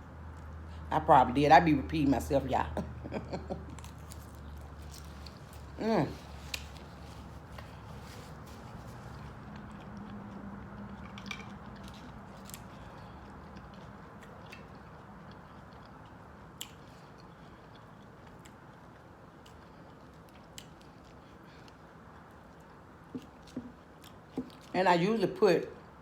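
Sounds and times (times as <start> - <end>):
person chewing salad: 2.8 - 24.7.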